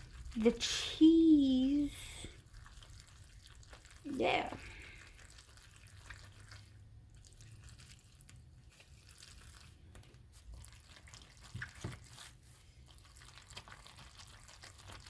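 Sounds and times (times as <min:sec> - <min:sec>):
fork scraping sticky food: 0:04.6 - 0:09.7.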